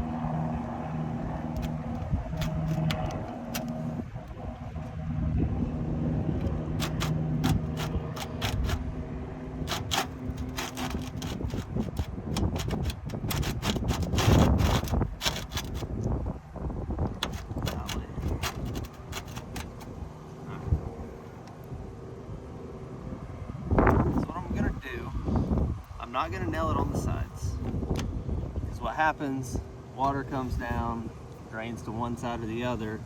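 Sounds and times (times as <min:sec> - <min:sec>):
engine hum: 0:00.0 - 0:26.0
sharp clicks and knocks: 0:01.4 - 0:04.9, 0:06.4 - 0:08.8, 0:09.6 - 0:15.9, 0:17.0 - 0:20.0.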